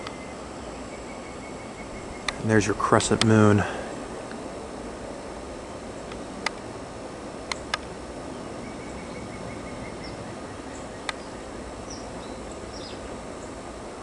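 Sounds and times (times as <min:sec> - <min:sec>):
window air conditioner running: 0:00.0 - 0:14.0
sharp clicks: 0:02.2 - 0:02.4, 0:03.1 - 0:03.4, 0:07.5 - 0:07.9.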